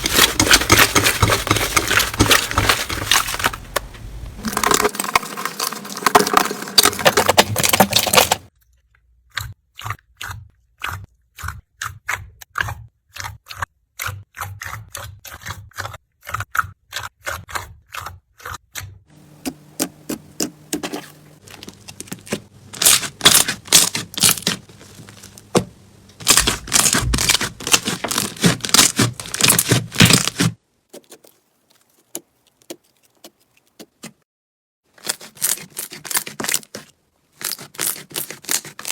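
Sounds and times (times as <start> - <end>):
slime crackling and popping: 19.4 - 33.8.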